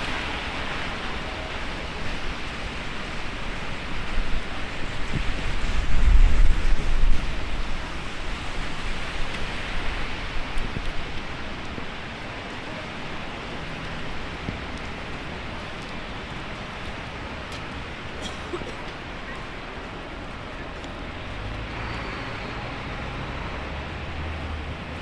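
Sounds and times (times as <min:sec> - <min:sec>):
heavy rain hissing: 0:00.0 - 0:25.0
wind buffeting microphone: 0:02.0 - 0:18.1.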